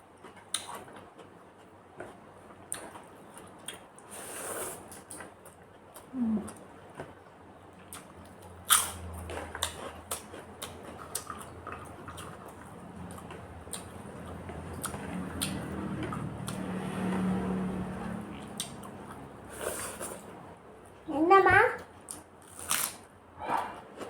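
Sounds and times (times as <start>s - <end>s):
chewing and mouth smacks: 7.9s - 16.6s.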